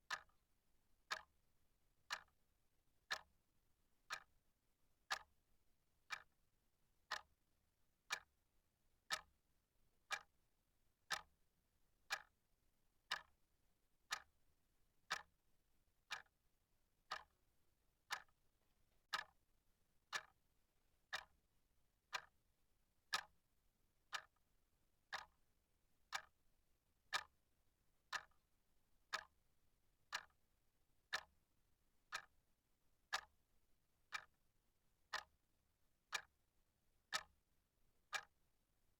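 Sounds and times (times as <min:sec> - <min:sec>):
clock ticking: 0:00.1 - 0:00.3, 0:02.1 - 0:02.3, 0:03.1 - 0:03.3, 0:04.1 - 0:04.3, 0:05.1 - 0:05.3, 0:06.1 - 0:06.3, 0:07.1 - 0:07.3, 0:08.1 - 0:08.3, 0:09.1 - 0:09.3, 0:10.1 - 0:10.3, 0:11.1 - 0:11.3, 0:12.1 - 0:12.3, 0:13.1 - 0:13.3, 0:14.1 - 0:14.3, 0:15.1 - 0:15.3, 0:16.1 - 0:16.3, 0:17.1 - 0:17.4, 0:18.1 - 0:18.3, 0:19.1 - 0:19.4, 0:20.1 - 0:20.4, 0:21.1 - 0:21.3, 0:23.1 - 0:23.3, 0:24.1 - 0:24.3, 0:25.1 - 0:25.3, 0:26.1 - 0:26.3, 0:27.1 - 0:27.3, 0:28.1 - 0:28.3, 0:29.1 - 0:29.3, 0:30.1 - 0:30.4, 0:31.1 - 0:31.3, 0:32.1 - 0:32.3, 0:33.1 - 0:33.3, 0:34.1 - 0:34.4, 0:35.1 - 0:35.3, 0:36.1 - 0:36.3, 0:37.1 - 0:37.4, 0:38.1 - 0:38.3.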